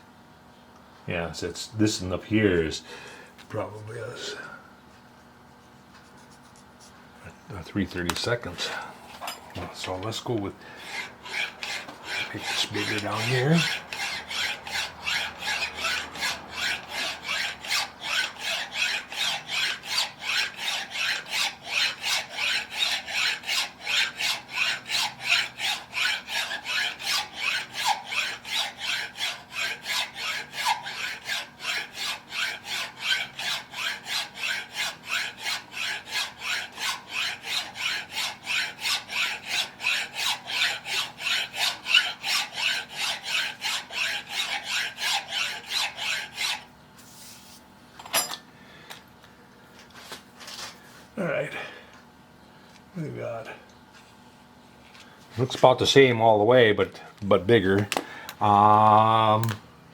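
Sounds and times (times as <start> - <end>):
hand file stroking metal: 8.0 - 48.4.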